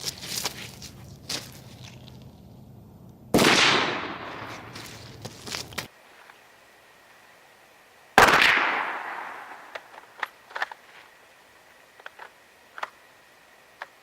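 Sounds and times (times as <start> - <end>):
gunshot with echo: 3.4 - 4.5, 8.2 - 9.7.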